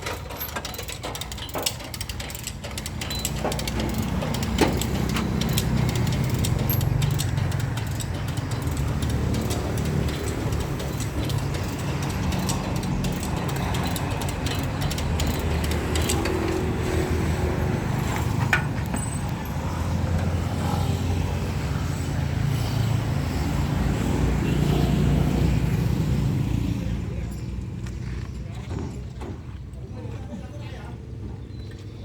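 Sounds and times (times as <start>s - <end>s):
engine rumbling: 0.0s - 32.0s.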